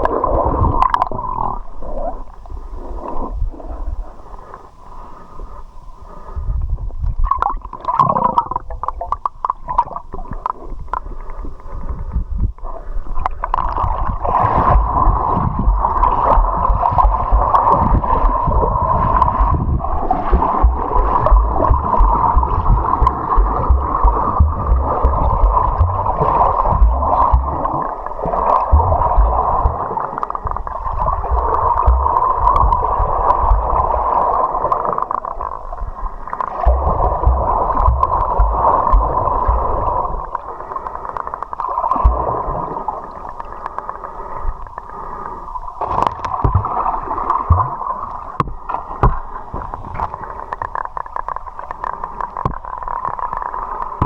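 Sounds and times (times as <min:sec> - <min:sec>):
underwater river rush: 0:00.0 - 0:54.0
low underwater bumps and knocks: 0:13.6 - 0:34.8, 0:35.8 - 0:40.5, 0:41.9 - 0:42.6, 0:45.9 - 0:46.8, 0:47.4 - 0:50.8.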